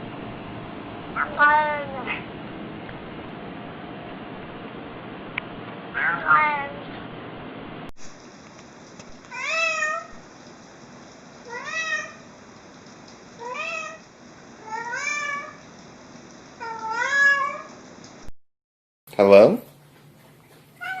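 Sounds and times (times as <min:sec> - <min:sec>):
cat meowing: 0:01.2 - 0:02.3, 0:05.9 - 0:06.8, 0:09.3 - 0:10.2, 0:11.5 - 0:12.3, 0:13.4 - 0:14.0, 0:14.6 - 0:15.6, 0:16.6 - 0:17.8, 0:20.8 - 0:21.0.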